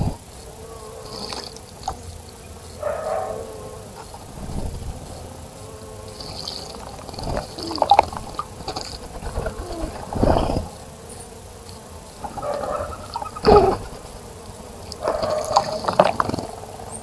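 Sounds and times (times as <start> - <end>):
birds splashing in water: 6.2 - 10.7, 12.2 - 14.1.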